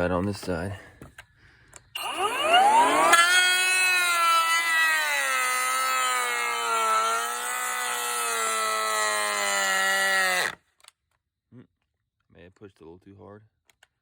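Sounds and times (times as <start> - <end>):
electric planer whining: 2.0 - 10.6.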